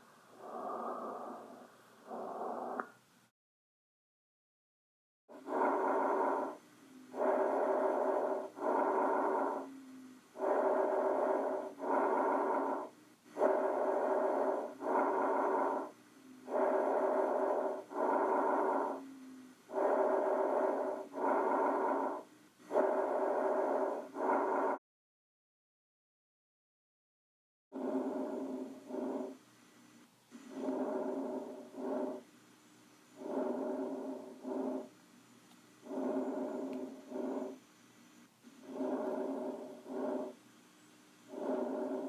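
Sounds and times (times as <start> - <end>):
breathing through a stethoscope: 0.0 - 2.8, 5.3 - 24.8, 27.8 - 32.3, 33.2 - 34.9, 35.8 - 37.6, 38.5 - 40.4, 41.3 - 42.0.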